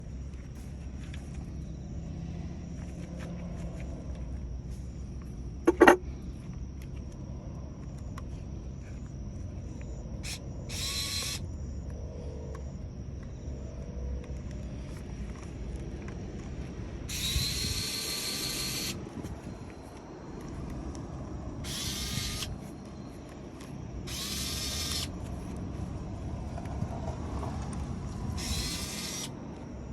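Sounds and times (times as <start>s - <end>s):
motor whirring ratchety: 10.2s - 11.4s, 17.1s - 19.0s, 21.6s - 22.6s, 24.0s - 25.2s, 28.4s - 29.4s.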